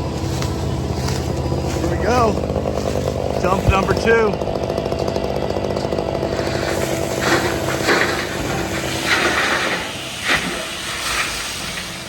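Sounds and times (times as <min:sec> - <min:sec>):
diesel engine running: 0:00.0 - 0:12.0
load sliding hissing rush: 0:06.3 - 0:12.0.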